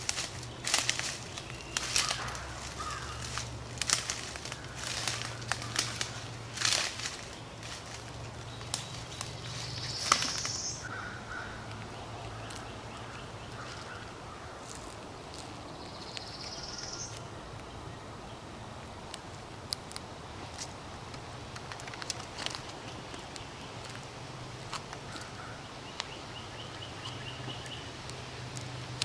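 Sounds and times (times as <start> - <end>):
small clicks and cracks: 0.0 - 9.4, 19.1 - 24.0, 27.0 - 29.0
high rising bird calls: 8.5 - 14.6, 15.6 - 17.2.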